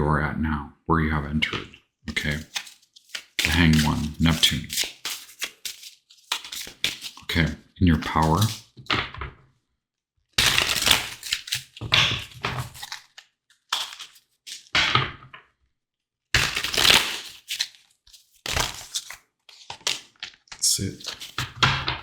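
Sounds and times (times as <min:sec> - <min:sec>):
cards shuffling: 0:02.1 - 0:08.8, 0:10.4 - 0:14.8, 0:16.4 - 0:21.6.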